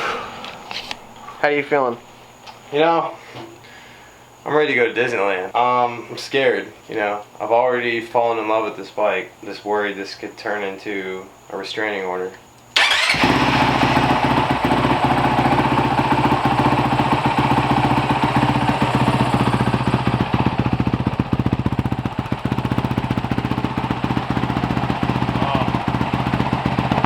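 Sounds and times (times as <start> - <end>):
motorcycle engine idling: 12.8 - 27.0.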